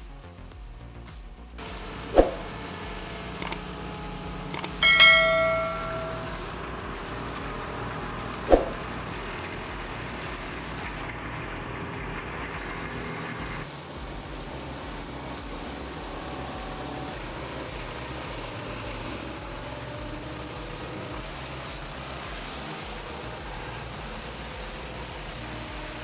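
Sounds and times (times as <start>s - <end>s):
sharp metallic clang: 4.6s - 6.6s, 8.5s - 8.8s.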